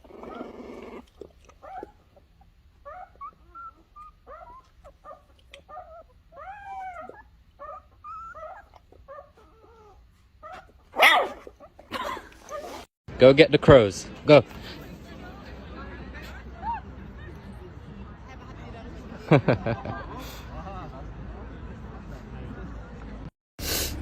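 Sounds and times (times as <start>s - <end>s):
puppy yipping and whimpering: 0.0s - 11.8s.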